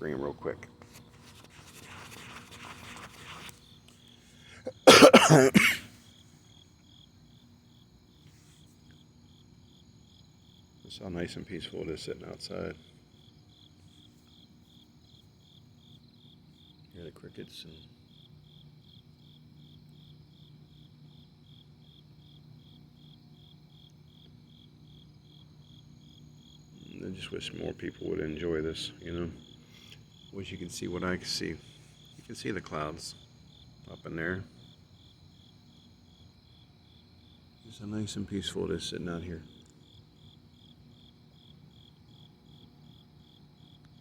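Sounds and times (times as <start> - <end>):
crickets chirping faintly: 0.0 - 44.0
rubbing on phone screen: 0.8 - 4.2
person coughing: 4.7 - 5.9.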